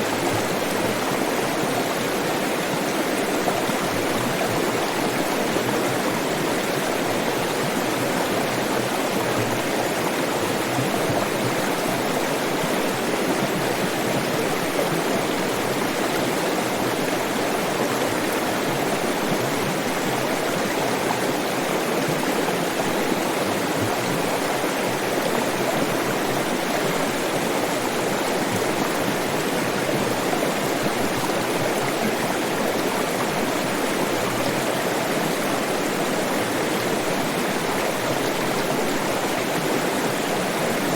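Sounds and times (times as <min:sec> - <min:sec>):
water flowing over rocks: 0:00.0 - 0:40.9.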